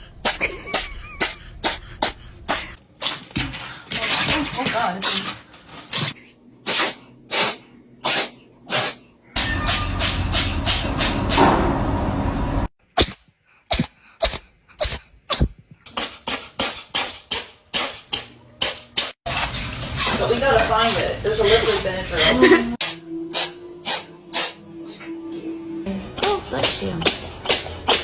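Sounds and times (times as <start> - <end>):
cats sneezing: 6.6 - 9.1, 22.2 - 25.0.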